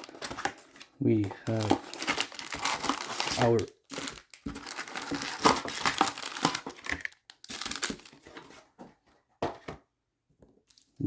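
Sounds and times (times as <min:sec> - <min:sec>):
plastic wrapping crinkling and tearing: 0:00.0 - 0:08.5.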